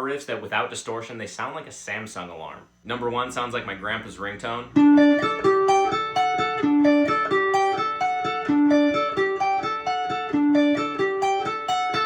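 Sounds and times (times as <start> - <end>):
clean electric guitar riff: 4.7 - 12.0.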